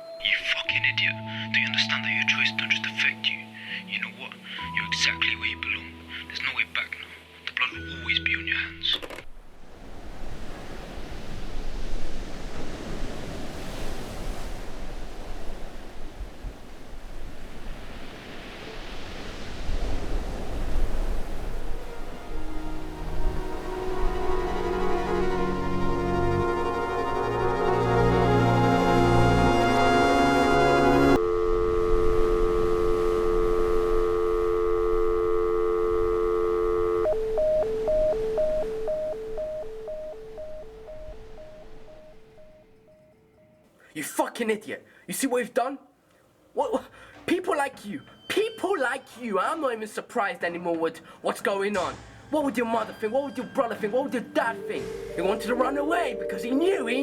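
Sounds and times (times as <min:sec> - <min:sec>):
telephone dial tone: 0:31.0 - 0:42.8
busy signal beeps: 0:31.1 - 0:43.6.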